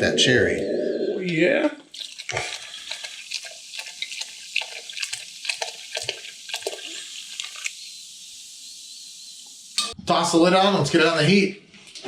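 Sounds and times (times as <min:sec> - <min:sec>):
drink pouring and splashing: 0:01.9 - 0:07.9
carbonated drink fizzing: 0:01.9 - 0:08.8.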